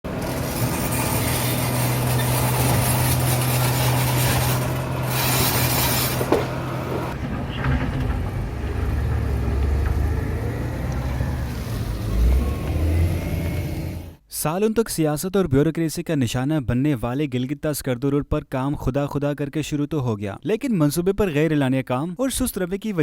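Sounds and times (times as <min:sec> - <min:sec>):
deep engine hum: 0:00.0 - 0:14.2
vehicle engine running with hiss: 0:00.1 - 0:07.2, 0:09.4 - 0:14.2.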